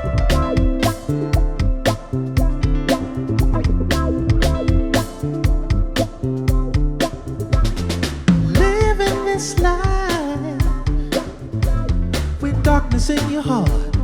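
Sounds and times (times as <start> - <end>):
sliding melody line: 0.0 - 10.6
drum kit groove: 0.0 - 14.0
electric bass: 0.0 - 14.0
keyboards: 0.0 - 14.0.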